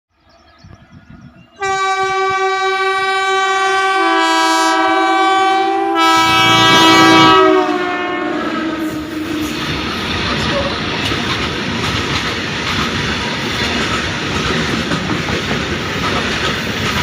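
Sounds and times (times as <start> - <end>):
passing train running noise: 0.2 - 17.0
train horn blast: 1.6 - 9.7.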